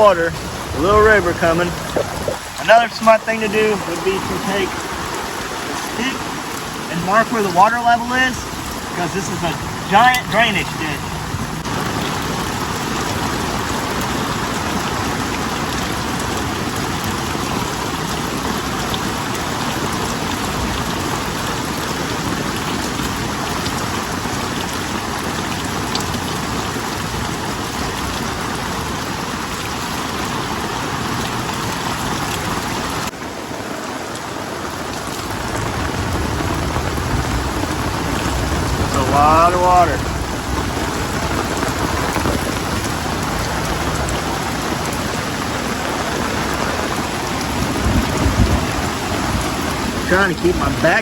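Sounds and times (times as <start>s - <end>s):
low thunder rumble: 0.0s - 2.7s, 35.3s - 50.9s
heavy rain pouring: 0.0s - 51.0s.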